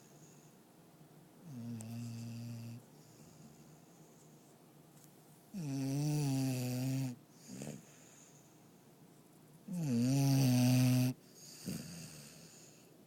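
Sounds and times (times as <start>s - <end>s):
dog snoring: 1.4s - 3.6s, 5.5s - 8.3s, 9.7s - 12.8s.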